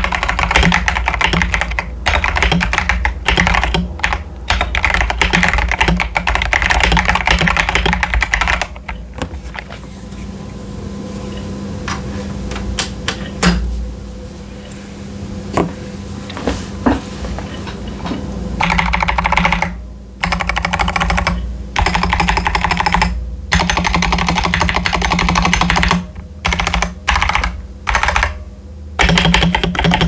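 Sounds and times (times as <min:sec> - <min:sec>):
mechanical keyboard typing: 0:00.0 - 0:09.0, 0:18.6 - 0:28.4, 0:29.0 - 0:30.0.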